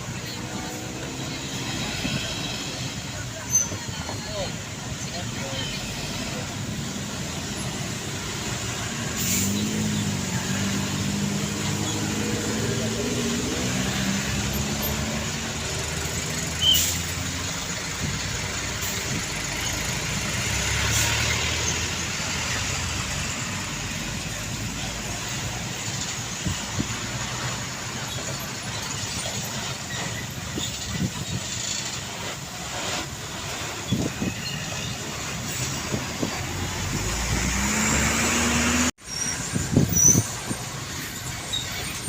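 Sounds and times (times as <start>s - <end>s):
heavy vehicles passing: 0.0s - 42.0s
brief high-pitched squeak: 3.4s - 4.2s, 16.6s - 17.1s, 33.8s - 35.9s, 39.0s - 42.0s.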